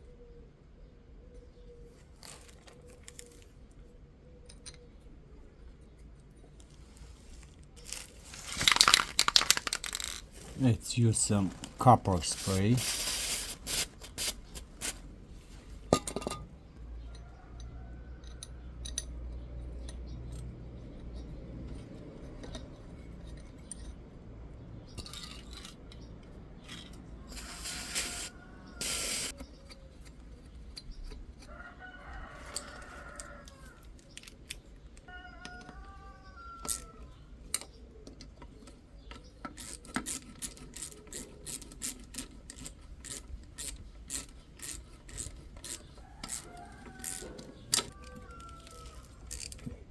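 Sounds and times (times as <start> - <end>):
aerosol spray hissing: 12.4 - 14.4, 27.3 - 29.3.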